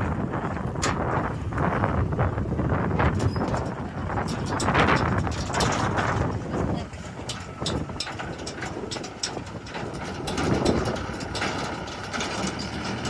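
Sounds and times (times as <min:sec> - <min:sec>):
diesel machinery running: 0:00.0 - 0:13.0.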